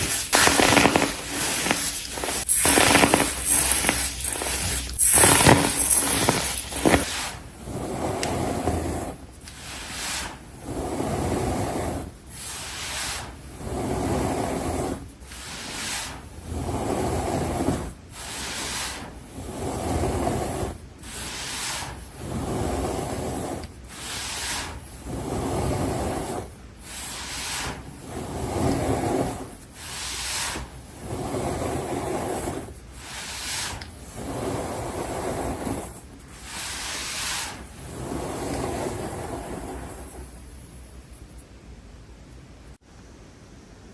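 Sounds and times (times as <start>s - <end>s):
baking soda blocks crunching: 0.0s - 7.2s.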